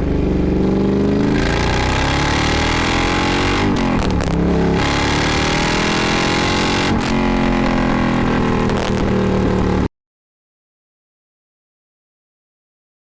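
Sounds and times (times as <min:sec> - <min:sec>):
motorcycle engine accelerating: 0:00.0 - 0:09.9.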